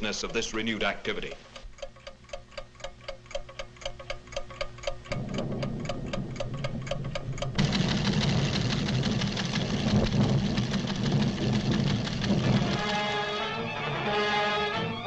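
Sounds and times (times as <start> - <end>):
fast mechanical ticking: 0.0 - 13.1
low rumble: 5.0 - 12.8.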